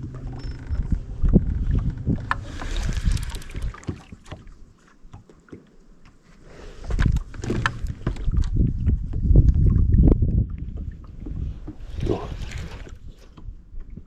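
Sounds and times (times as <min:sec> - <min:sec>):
gear knocking and clicking: 0:00.0 - 0:04.0
wind rumbling on microphone: 0:00.0 - 0:04.7, 0:06.6 - 0:14.0.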